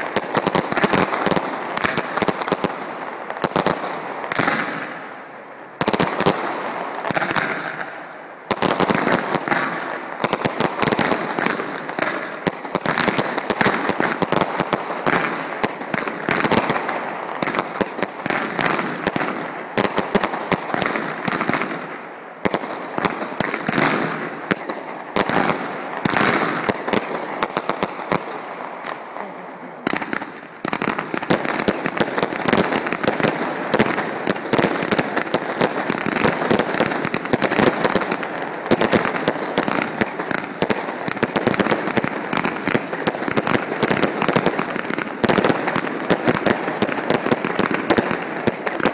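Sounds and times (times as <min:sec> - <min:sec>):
fireworks bangs and crackling: 0:00.0 - 0:48.9.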